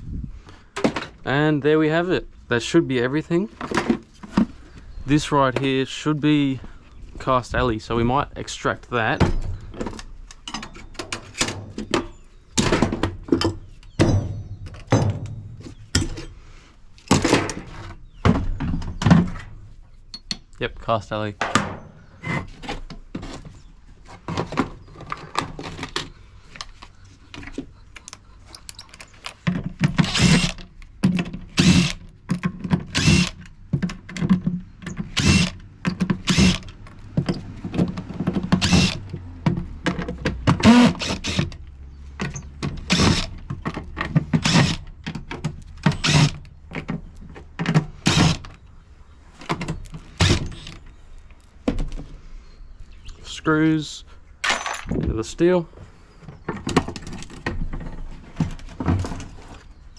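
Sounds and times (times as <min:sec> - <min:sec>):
power drill running: 0:30.0 - 0:30.6, 0:31.6 - 0:32.0, 0:32.9 - 0:33.4, 0:35.2 - 0:35.6, 0:36.2 - 0:36.7, 0:38.6 - 0:39.0, 0:40.6 - 0:41.4, 0:42.9 - 0:43.3, 0:44.4 - 0:44.8, 0:46.0 - 0:46.4, 0:48.1 - 0:48.4
metal pieces clunking: 0:54.4 - 0:55.1.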